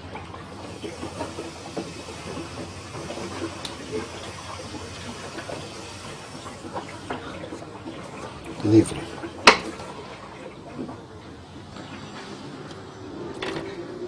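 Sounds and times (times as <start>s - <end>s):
washing machine drum rattling: 0.0s - 10.0s.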